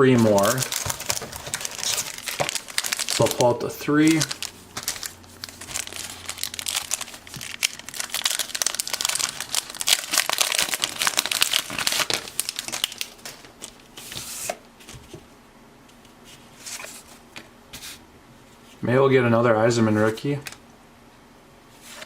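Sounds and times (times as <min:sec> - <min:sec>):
wax-paper wrappers crinkling and tearing: 0:00.0 - 0:14.0.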